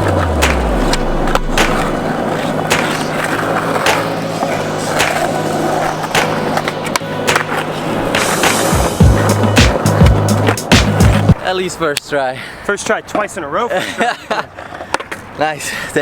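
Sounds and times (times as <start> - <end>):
background music: 0.0 - 11.4
skateboard clacks: 0.0 - 11.4, 14.6 - 15.3
skateboard wheels rolling on concrete: 0.0 - 16.0.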